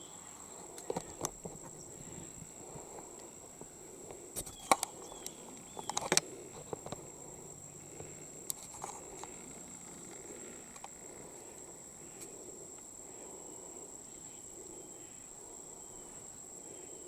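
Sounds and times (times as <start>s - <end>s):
high-pitched insect trill: 0.0s - 17.0s
clicks and rustles: 2.7s - 7.1s, 7.9s - 11.0s.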